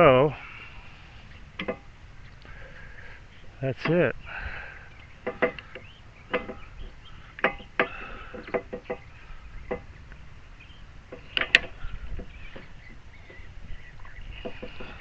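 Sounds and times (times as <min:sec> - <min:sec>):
sharp wooden knocks and clicks: 0:01.6 - 0:01.9, 0:05.2 - 0:09.1, 0:09.7 - 0:09.9, 0:11.1 - 0:13.5, 0:14.3 - 0:15.0.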